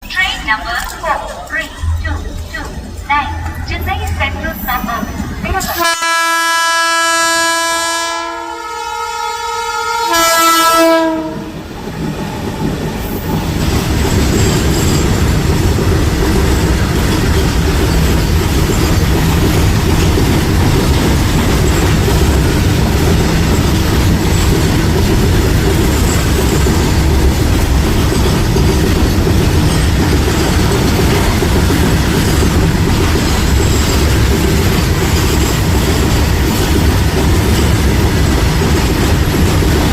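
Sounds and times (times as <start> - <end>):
locomotive horn blasts: 5.7 - 11.6
freight wagon wheels rumbling: 11.8 - 39.9.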